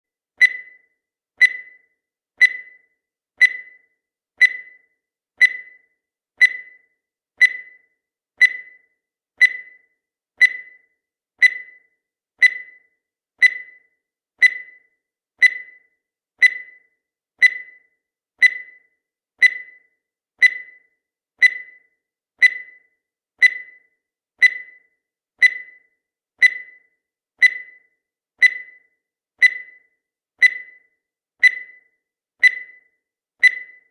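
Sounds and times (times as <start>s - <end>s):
short high timer beeps: 31.4s - 33.9s.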